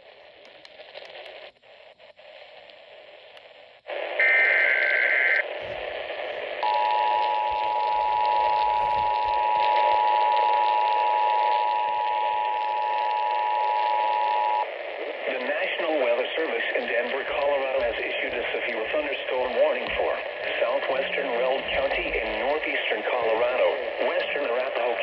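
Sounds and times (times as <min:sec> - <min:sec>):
radio receiver hiss: 0:00.0 - 0:25.0.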